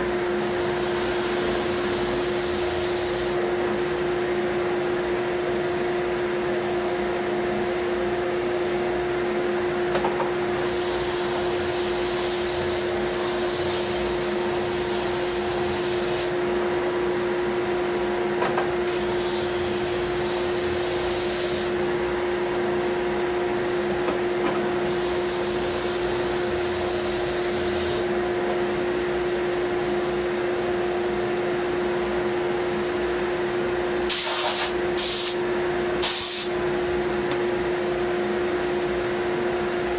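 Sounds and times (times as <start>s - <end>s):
sander and dust collector humming: 0.4s - 3.5s, 10.6s - 16.6s, 18.9s - 21.8s, 24.9s - 28.2s
wood hissing against sandpaper: 10.6s - 16.3s, 19.0s - 21.7s, 24.9s - 28.0s.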